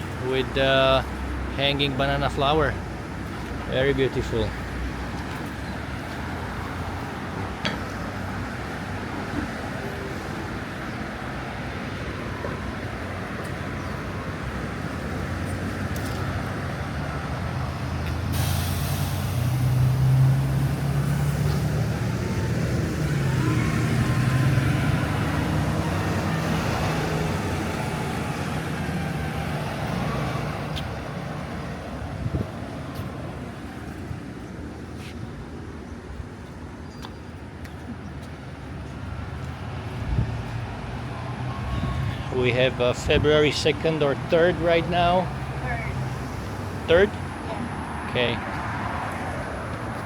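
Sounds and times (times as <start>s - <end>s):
heavy vehicle engine rumbling: 0.0s - 35.5s
street traffic: 0.0s - 50.0s
air hiss: 18.3s - 20.0s.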